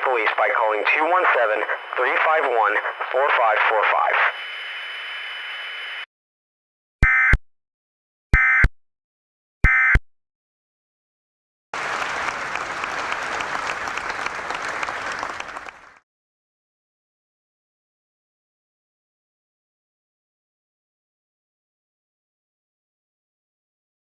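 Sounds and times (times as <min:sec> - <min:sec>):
digital data tone bursts: 0:00.0 - 0:06.1
applause: 0:11.8 - 0:16.0.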